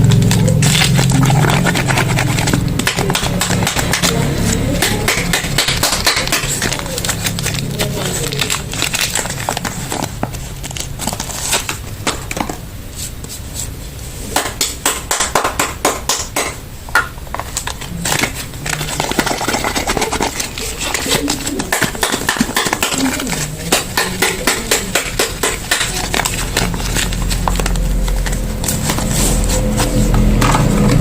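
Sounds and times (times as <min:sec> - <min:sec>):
wrappers crinkling and crackling: 0:00.0 - 0:13.8, 0:17.2 - 0:31.0.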